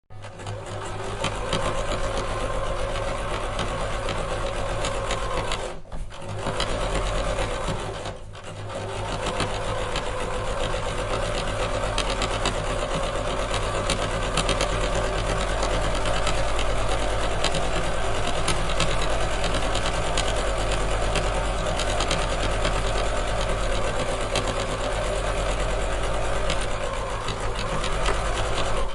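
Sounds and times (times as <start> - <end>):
sewing machine stitching clatter: 0.1 - 28.9.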